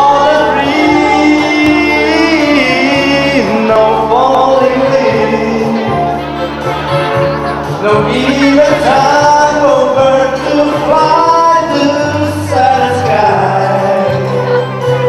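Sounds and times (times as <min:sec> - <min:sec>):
man singing: 0:00.0 - 0:06.7, 0:07.6 - 0:15.0
band playing: 0:00.0 - 0:15.0.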